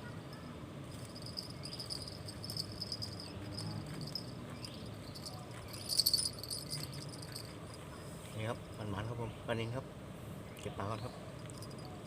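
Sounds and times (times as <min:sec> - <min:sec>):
insects chirring: 0:00.9 - 0:07.7.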